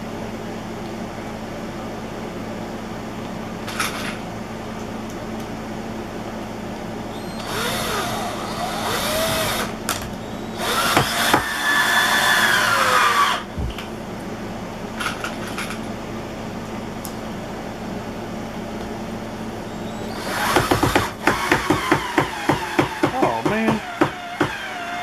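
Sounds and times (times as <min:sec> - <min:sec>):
electric drill driving screws: 0:07.1 - 0:13.5, 0:20.0 - 0:25.0.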